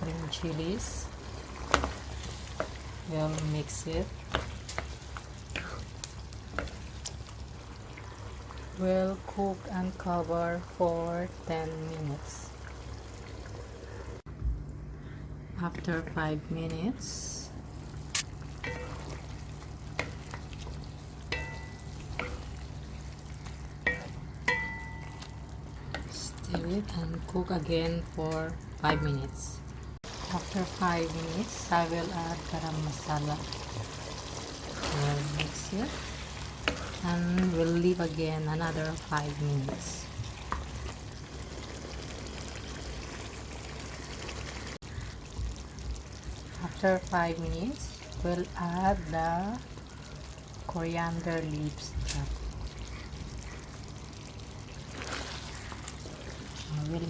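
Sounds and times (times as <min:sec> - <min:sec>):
steady low hum: 0:13.6 - 0:43.8
spoon stirring in a pan: 0:18.2 - 0:29.3, 0:30.1 - 0:43.1, 0:52.7 - 0:57.0
spoon clinking against pan: 0:21.3 - 0:22.4, 0:23.9 - 0:25.4.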